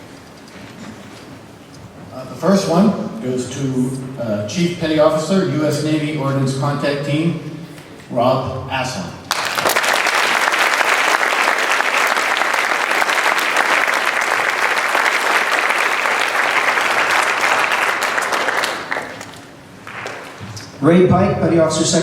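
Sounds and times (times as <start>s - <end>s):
audience applauding: 9.3s - 20.6s.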